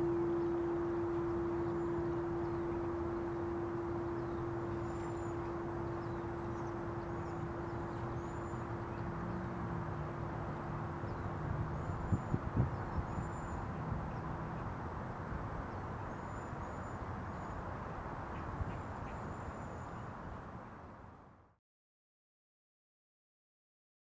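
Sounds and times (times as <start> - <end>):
singing bowl ringing: 0.0 - 9.1.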